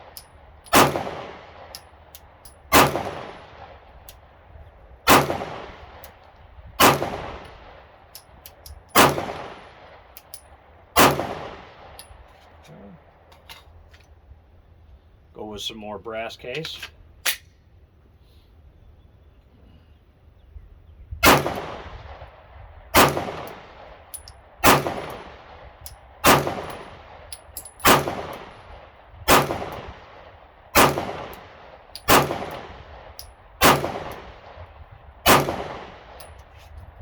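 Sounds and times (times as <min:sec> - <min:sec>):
pistol shots with echo: 0:00.0 - 0:01.8, 0:02.7 - 0:04.0, 0:05.1 - 0:06.2, 0:06.8 - 0:08.0, 0:08.9 - 0:10.4, 0:11.0 - 0:12.0, 0:21.2 - 0:36.3.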